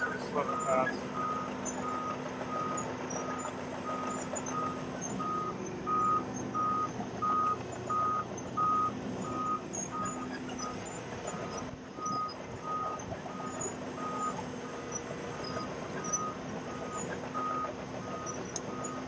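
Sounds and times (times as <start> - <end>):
diesel engine drone: 0.0 - 19.0
backup alarm beeping: 0.4 - 14.4.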